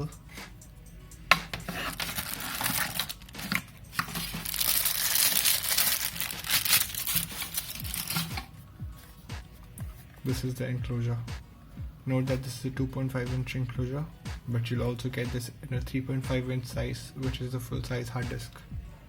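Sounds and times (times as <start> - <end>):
plastic packaging crinkling: 1.7 - 8.5.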